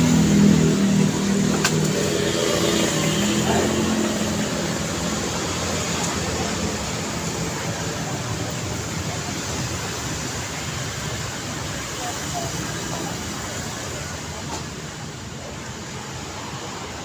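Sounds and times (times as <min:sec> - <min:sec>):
vehicle engine running: 0:00.0 - 0:10.0
steady traffic hum: 0:00.0 - 0:17.0.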